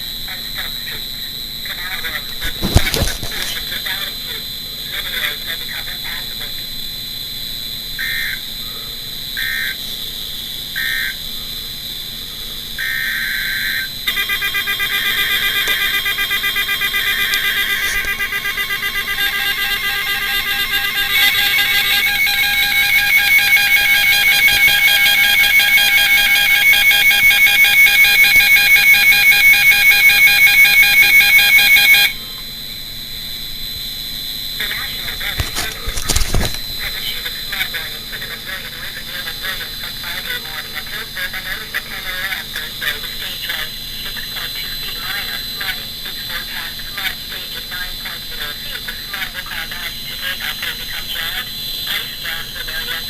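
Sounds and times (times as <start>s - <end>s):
pulsing electronic alarm tone: 12.8s - 32.2s.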